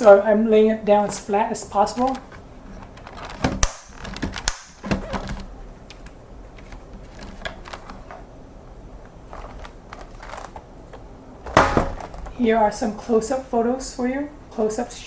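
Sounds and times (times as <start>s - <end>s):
plastic keyboard clicks and knocks: 1.9s - 8.2s.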